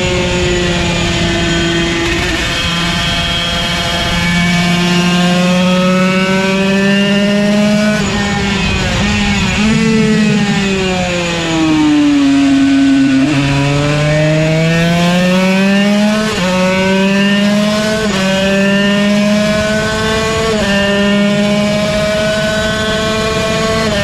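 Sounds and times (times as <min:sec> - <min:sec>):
two-stroke race engine revving: 0:00.0 - 0:24.0.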